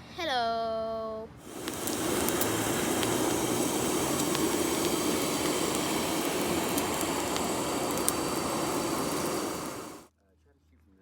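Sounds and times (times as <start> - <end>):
fire crackling: 1.4 - 10.1
forge fire air rushing: 1.4 - 10.1.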